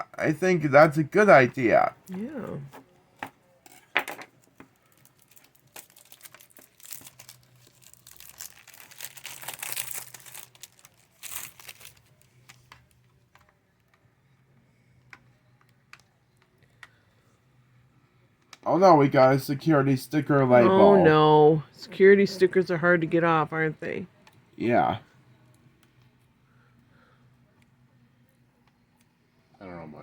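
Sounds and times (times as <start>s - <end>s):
plastic shrink-wrap tearing: 4.7s - 13.0s.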